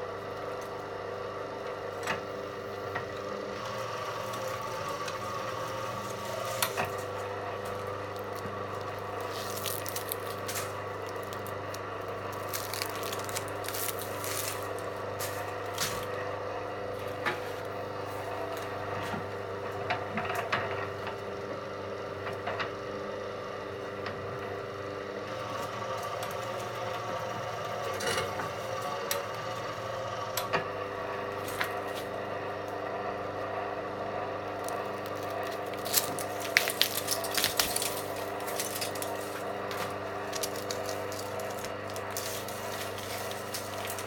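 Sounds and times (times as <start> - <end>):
electric motor humming: 0.0 - 22.0, 22.7 - 44.0
cable scraping and clicking: 6.0 - 16.1, 34.6 - 44.0.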